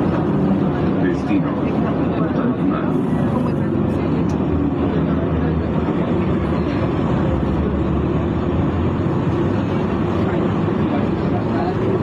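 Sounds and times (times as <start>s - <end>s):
low rumble of vehicle noise: 0.0s - 12.0s.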